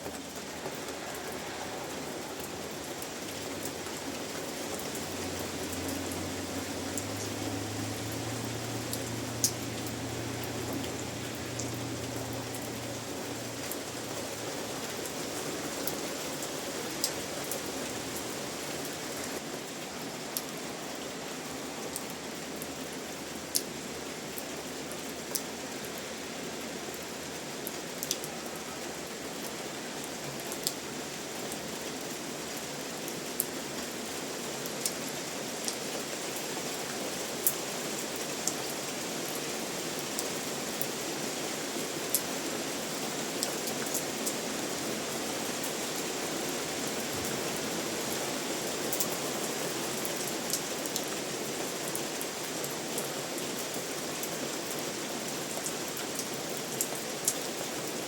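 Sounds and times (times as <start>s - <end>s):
raindrops ticking: 0.0s - 14.9s
steady rain hiss: 0.0s - 58.0s.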